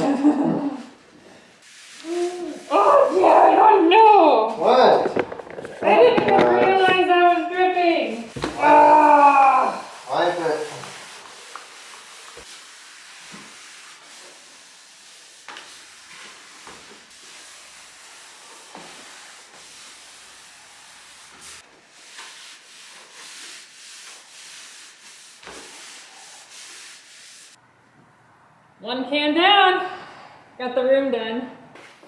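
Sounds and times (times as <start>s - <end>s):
applicator rubbing on wooden floor: 4.6s - 8.5s.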